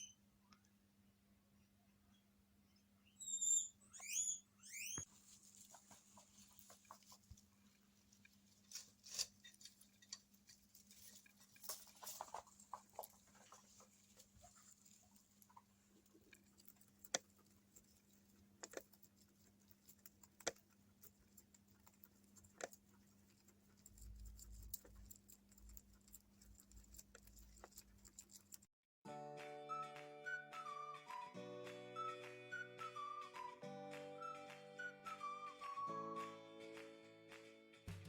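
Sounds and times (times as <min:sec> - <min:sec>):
guinea pigs clicking and rustling: 0:04.0 - 0:28.7.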